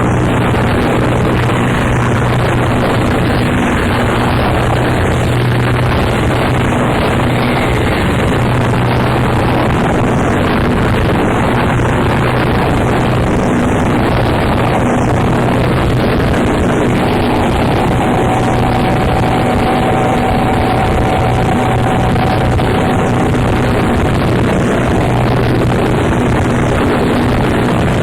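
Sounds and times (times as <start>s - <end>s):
distorted noise music: 0.0s - 28.0s
low drone: 0.0s - 28.0s
thin high tone: 14.6s - 25.8s.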